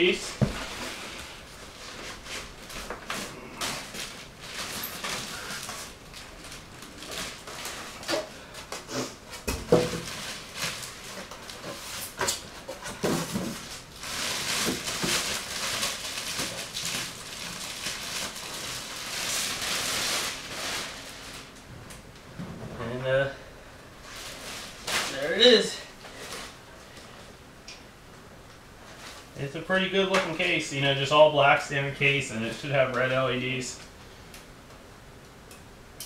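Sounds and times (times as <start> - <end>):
packing material rustling and scraping: 0.0 - 21.6, 24.0 - 27.3
heavy thump: 0.4 - 0.7.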